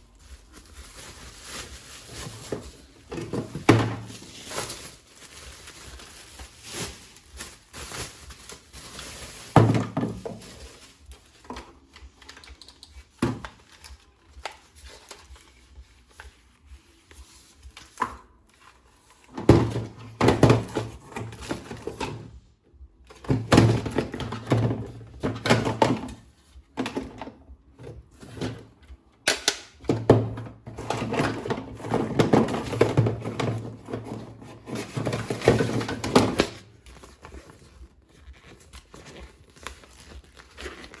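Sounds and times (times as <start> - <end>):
packaging being handled: 0.0 - 22.1, 30.8 - 41.0.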